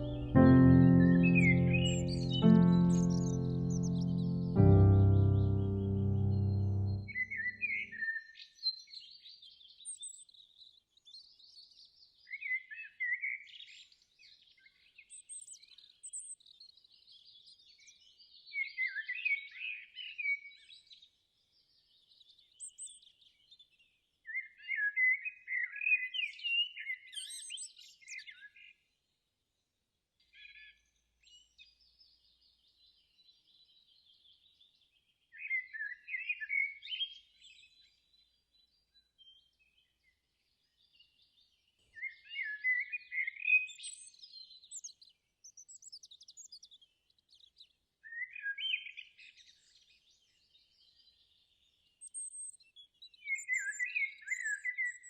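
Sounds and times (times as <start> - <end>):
birds chirping and singing: 0.0 - 7.8.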